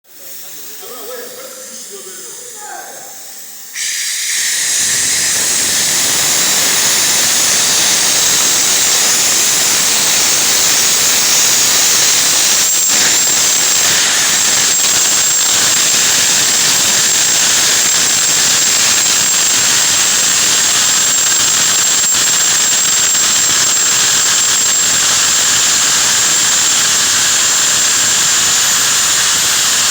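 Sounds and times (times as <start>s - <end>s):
loud steam hiss: 0.0s - 29.9s
thin high whistle: 1.4s - 15.8s.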